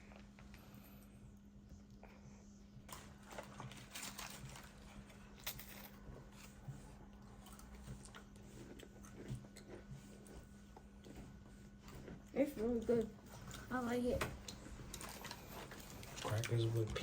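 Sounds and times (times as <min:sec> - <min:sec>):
chewing: 0:06.2 - 0:13.7, 0:14.4 - 0:17.0.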